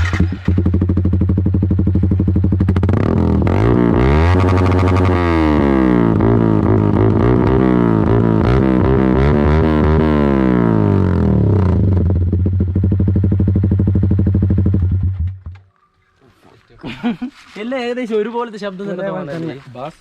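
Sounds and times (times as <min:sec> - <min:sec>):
motorcycle engine revving: 0:00.0 - 0:15.6.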